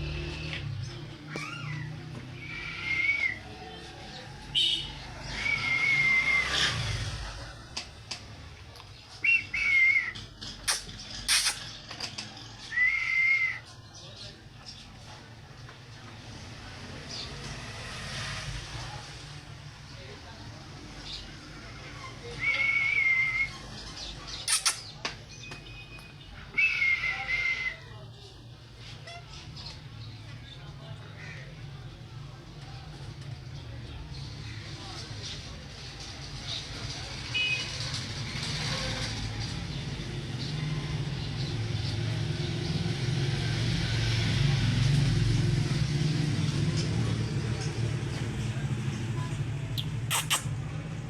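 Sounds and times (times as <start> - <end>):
parrot whistling: 2.4 - 3.4, 5.3 - 6.7, 12.7 - 13.6, 26.6 - 27.8, 49.8 - 50.5
parrot squawking: 10.7 - 11.7, 24.4 - 24.9, 49.8 - 50.6.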